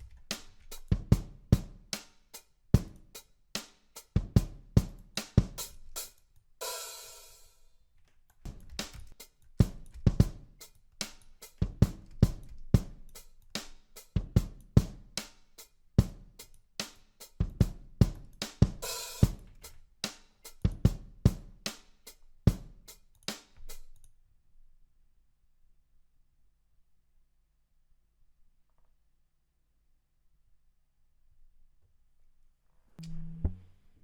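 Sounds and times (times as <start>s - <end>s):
programmed drum beat: 0.0s - 2.1s, 2.8s - 3.2s, 4.0s - 7.4s, 8.5s - 15.3s, 16.0s - 21.8s.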